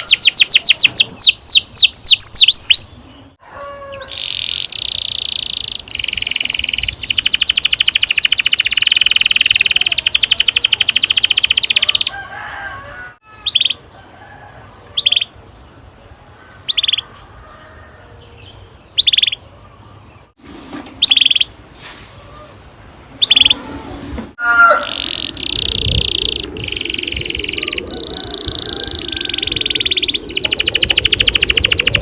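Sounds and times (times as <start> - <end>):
canary trilling: 0.0 - 3.0, 3.9 - 12.2, 23.2 - 23.7, 24.4 - 32.0.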